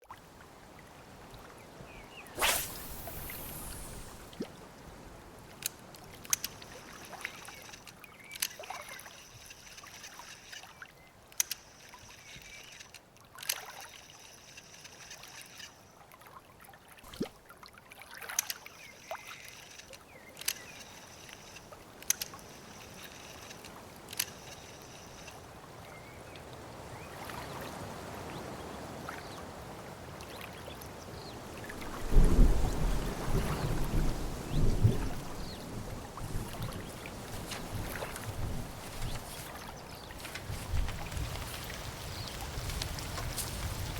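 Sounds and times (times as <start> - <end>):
water lapping and sloshing: 2.2 - 43.9
small splashes: 2.3 - 4.6, 5.4 - 25.5, 36.2 - 43.9
rain hiss: 2.4 - 4.4, 22.4 - 25.6, 40.2 - 43.9
short clicks: 18.4 - 25.4.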